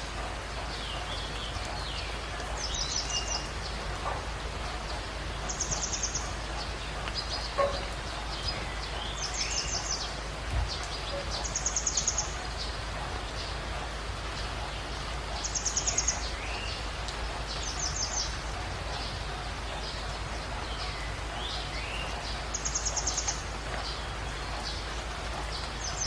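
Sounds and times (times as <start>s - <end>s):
steady background hiss: 0.0s - 26.0s.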